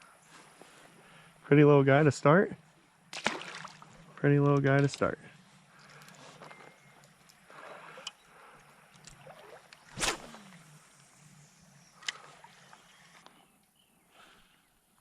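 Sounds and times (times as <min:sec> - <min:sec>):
creek water flowing: 0:02.7 - 0:04.5, 0:05.3 - 0:13.3
water splash: 0:03.1 - 0:03.9, 0:09.2 - 0:10.7.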